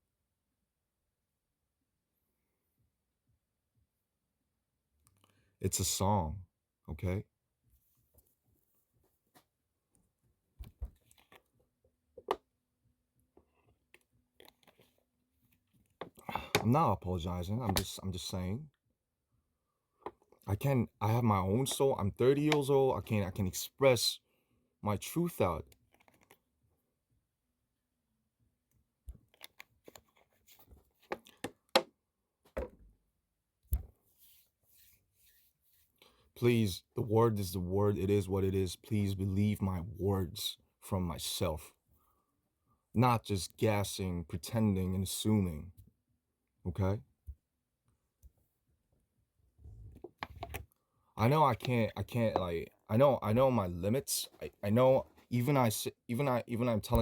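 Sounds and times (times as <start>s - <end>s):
faint clicks and handling noises: 7.8s - 12.6s, 13.2s - 16.7s, 17.4s - 18.9s, 19.9s - 20.5s, 25.6s - 26.8s, 28.6s - 32.8s, 49.9s - 50.9s.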